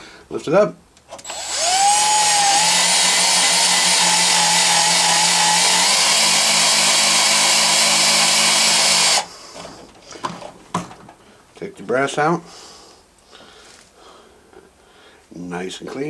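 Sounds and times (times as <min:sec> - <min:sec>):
electric drill whirring: 0:01.2 - 0:09.3.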